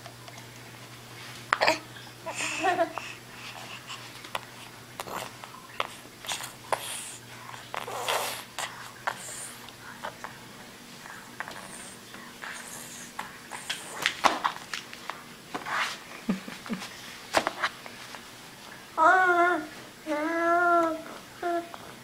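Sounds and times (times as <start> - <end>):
baby puffing and snorting: 7.8 - 9.4.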